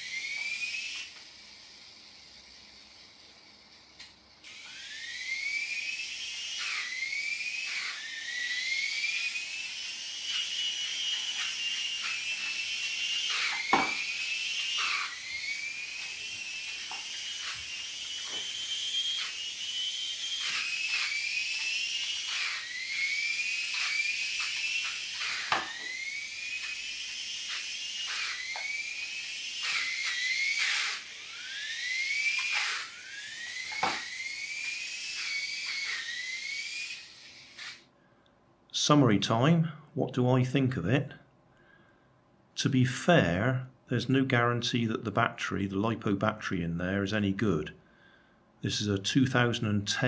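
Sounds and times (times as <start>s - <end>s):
electric motor whining: 0.0s - 37.9s.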